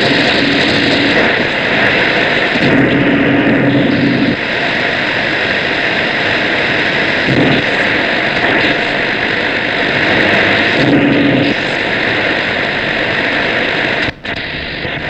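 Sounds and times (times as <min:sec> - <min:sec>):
faint low radio tones: 0:00.0 - 0:15.0
radio static hiss: 0:00.0 - 0:15.0.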